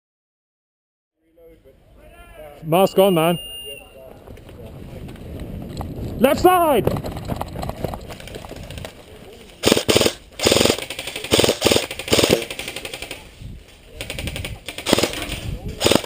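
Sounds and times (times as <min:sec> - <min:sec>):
airsoft rifle full-auto bursts: 0:09.6 - 0:13.2, 0:14.0 - 0:16.0.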